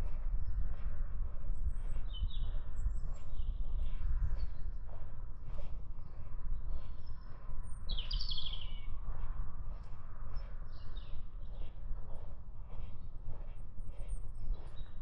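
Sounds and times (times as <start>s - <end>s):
footsteps on forest track: 0.0s - 15.0s
songbird singing: 1.7s - 4.7s, 6.6s - 9.0s, 10.3s - 11.8s.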